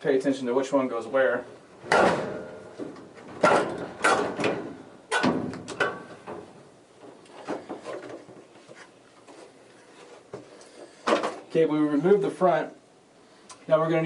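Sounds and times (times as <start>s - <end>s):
sheet metal clunks and scrapes: 1.8s - 8.8s.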